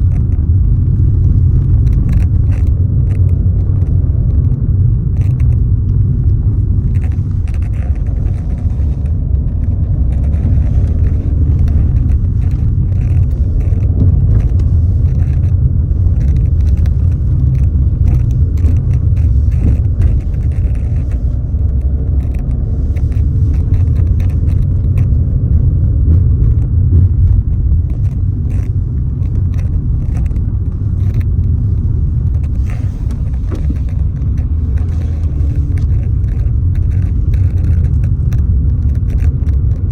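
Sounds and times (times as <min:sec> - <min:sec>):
wind buffeting microphone: 0:00.0 - 0:39.9.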